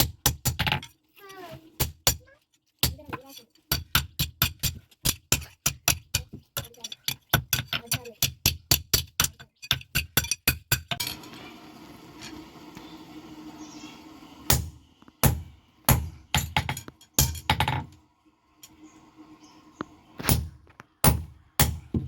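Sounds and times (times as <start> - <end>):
hammer striking iron on anvil: 14.5 - 17.9, 20.3 - 22.0.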